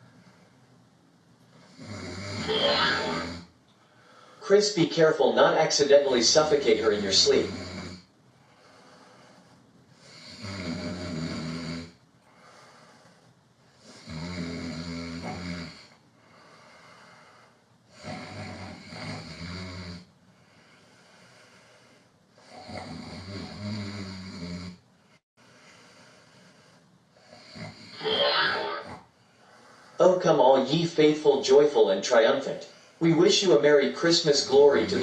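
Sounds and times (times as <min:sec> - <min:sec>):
man snoring: 0:01.6 - 0:03.5, 0:06.4 - 0:13.2, 0:13.8 - 0:24.8, 0:25.7 - 0:29.0, 0:34.4 - 0:35.0.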